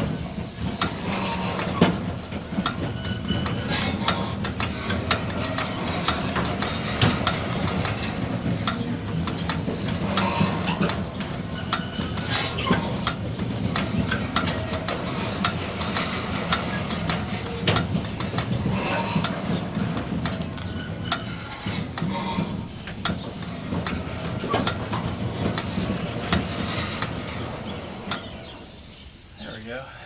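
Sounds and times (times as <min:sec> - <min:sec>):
metallic clicking and clinking: 0:00.0 - 0:28.6.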